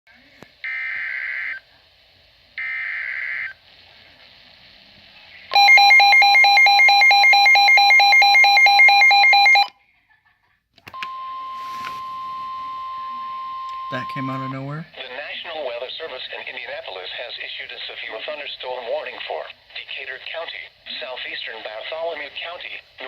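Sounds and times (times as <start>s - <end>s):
steady single-pitch alarm tone: 5.5s - 9.7s, 11.0s - 14.8s.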